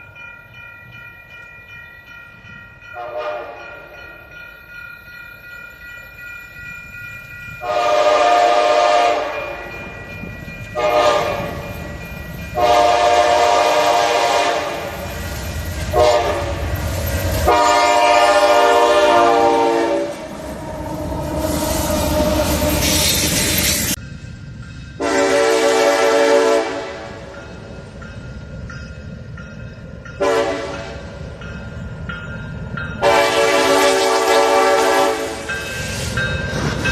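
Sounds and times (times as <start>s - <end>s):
low train rumble: 0.0s - 36.9s
multi-chime locomotive air horn: 2.8s - 4.2s, 7.6s - 9.9s, 10.7s - 11.7s, 12.5s - 15.0s, 15.9s - 16.7s, 17.4s - 20.3s, 25.0s - 27.4s, 30.2s - 31.1s, 33.0s - 36.1s.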